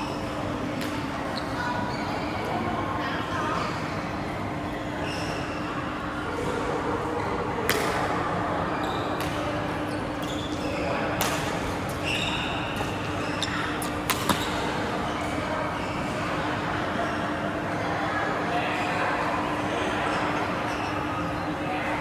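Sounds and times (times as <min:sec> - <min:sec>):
shoe squeaks: 0:01.3 - 0:02.4, 0:04.9 - 0:05.7, 0:09.8 - 0:11.0, 0:12.0 - 0:16.2, 0:20.6 - 0:21.4
racket hitting shuttlecock: 0:14.0 - 0:14.6.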